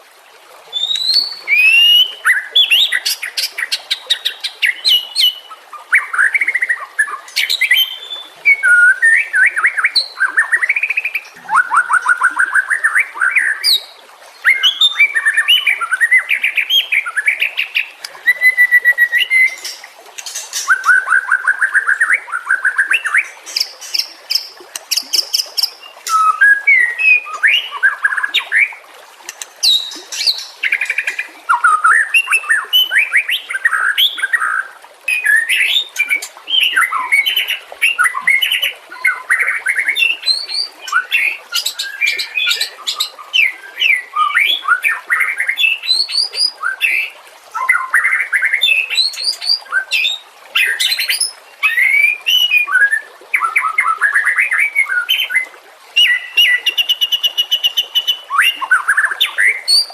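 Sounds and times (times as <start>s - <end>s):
bird singing whistled phrases: 0.7s - 3.0s, 4.7s - 10.8s, 18.2s - 24.0s, 25.8s - 28.6s, 29.6s - 55.4s.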